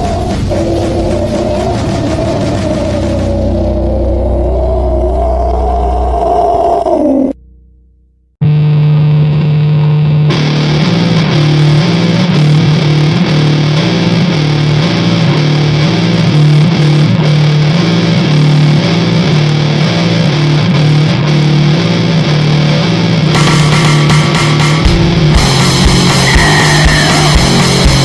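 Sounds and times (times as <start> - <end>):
wall of distorted noise: 0.0 - 7.4, 8.4 - 28.0
distorted guitar riff: 0.0 - 28.0.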